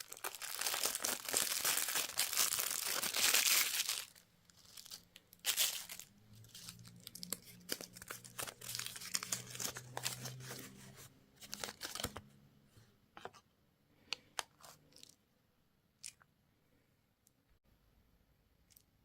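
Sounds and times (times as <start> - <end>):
candy wrapper crinkling: 0.0 - 10.8, 11.4 - 12.2.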